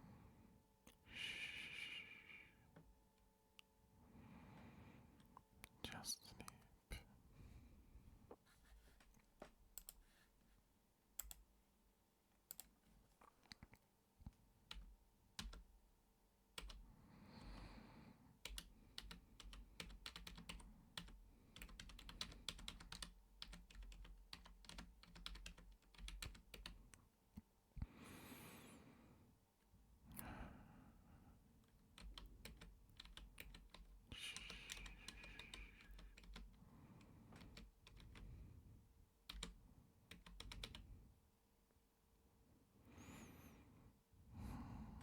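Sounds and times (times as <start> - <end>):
typing on computer keyboard: 9.7 - 10.0, 11.2 - 11.4, 12.5 - 12.8, 14.6 - 15.7, 16.6 - 16.8, 18.4 - 26.8, 31.9 - 38.3, 39.3 - 40.9.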